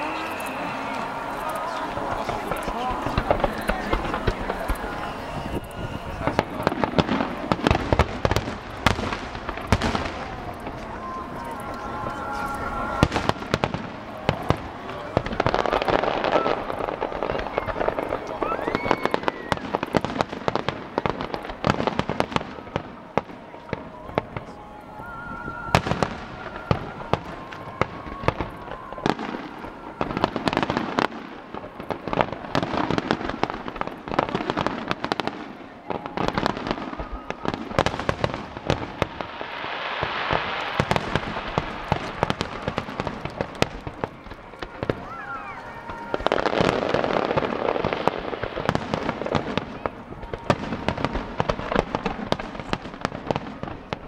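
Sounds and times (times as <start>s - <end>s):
faint music: 0.0s - 19.3s
fireworks bursting and crackling: 0.0s - 54.0s.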